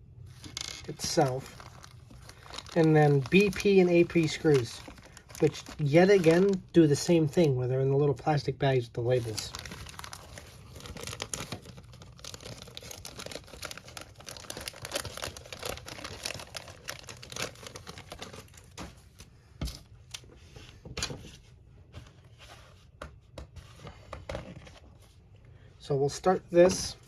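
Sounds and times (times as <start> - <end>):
plastic bags crinkling: 0.3 - 7.4, 9.1 - 19.3.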